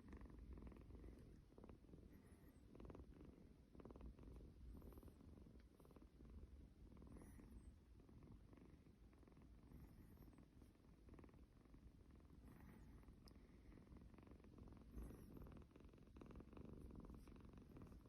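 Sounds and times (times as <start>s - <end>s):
kitten purring: 0.0s - 18.0s.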